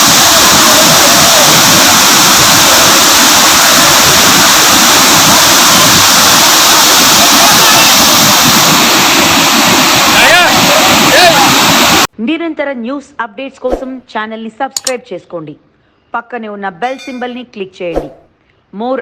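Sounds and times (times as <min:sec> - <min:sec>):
water rushing over a dam: 0:00.0 - 0:12.1.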